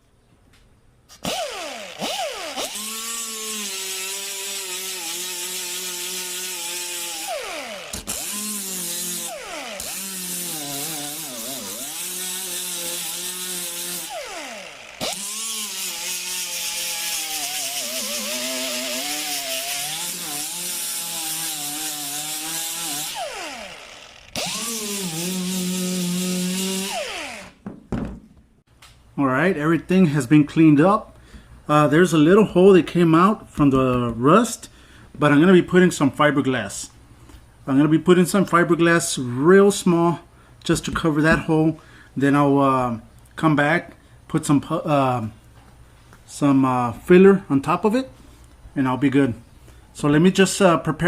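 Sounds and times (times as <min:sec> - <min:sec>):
air die grinder grinding metal: 0:01.1 - 0:27.6.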